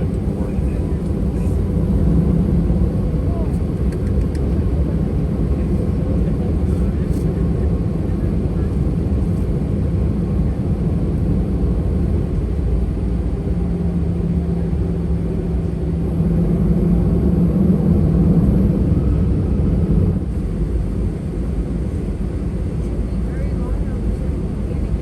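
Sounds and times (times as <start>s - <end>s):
airliner cabin low rumble: 0.0s - 25.0s.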